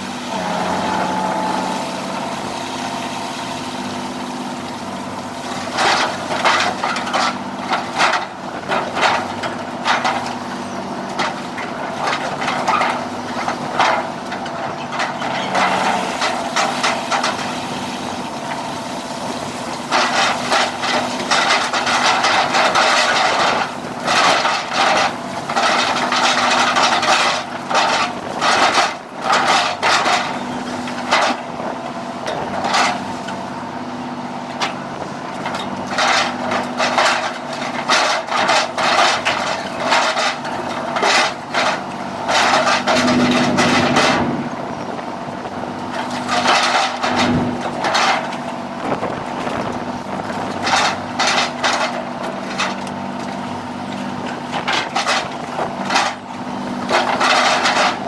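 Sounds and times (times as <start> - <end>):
boat engine humming: 0.0 - 6.8, 30.3 - 36.8, 40.4 - 46.4, 47.2 - 57.2.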